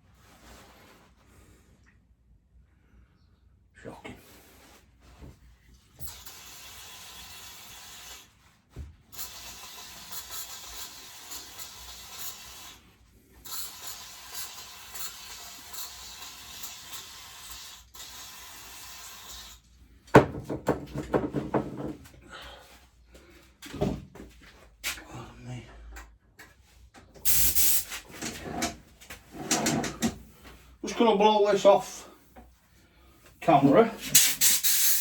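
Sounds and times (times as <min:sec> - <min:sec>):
compressed air blow gun hissing: 0:06.0 - 0:08.3, 0:27.2 - 0:28.1, 0:34.0 - 0:35.0
sharp knock and clatter: 0:20.1 - 0:21.9
thump: 0:20.1 - 0:21.9.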